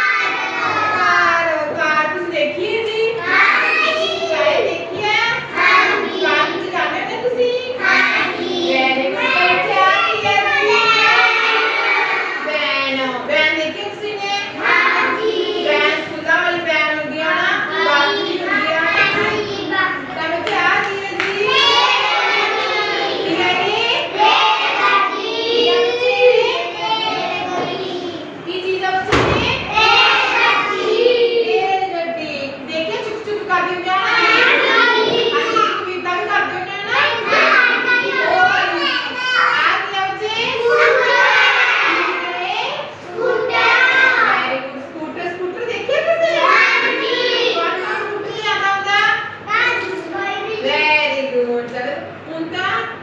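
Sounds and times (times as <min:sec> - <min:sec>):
child speaking in sing-song voice: 0:17.1 - 0:28.5, 0:33.9 - 0:44.6, 0:46.2 - 0:48.6.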